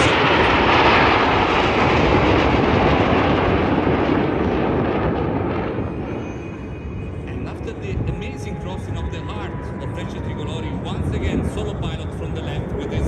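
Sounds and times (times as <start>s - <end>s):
jet aircraft rush: 0.0s - 13.0s.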